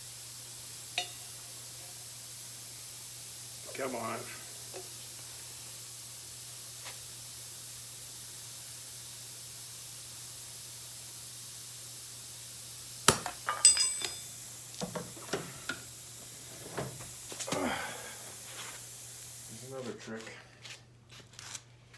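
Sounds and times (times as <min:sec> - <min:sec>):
metal objects clinking: 0:13.1 - 0:15.4.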